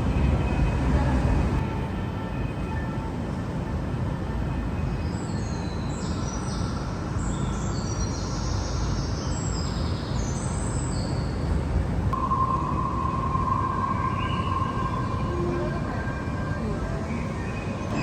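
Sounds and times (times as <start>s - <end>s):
short high chirping tones: 12.2s - 18.0s
steady mid-pitched tone: 12.2s - 18.0s.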